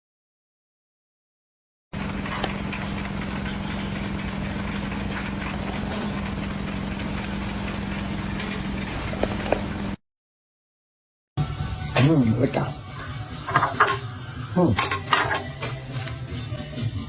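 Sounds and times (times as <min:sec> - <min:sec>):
engine running steadily: 0:02.0 - 0:10.0.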